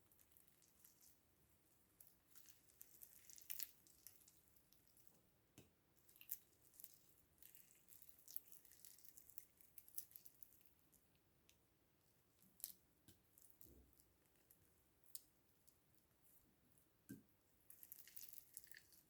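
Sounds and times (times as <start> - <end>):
slime squishing and crackling: 0.0 - 1.2, 1.9 - 5.2, 6.0 - 10.8, 17.7 - 19.0.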